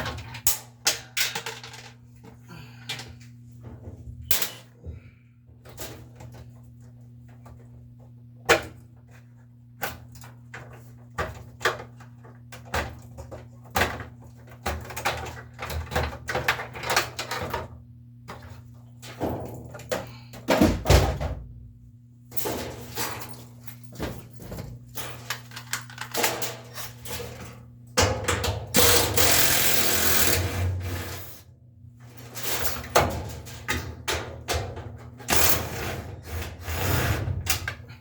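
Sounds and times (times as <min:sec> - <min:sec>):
parts clattering: 0:00.1 - 0:04.7, 0:22.5 - 0:27.4.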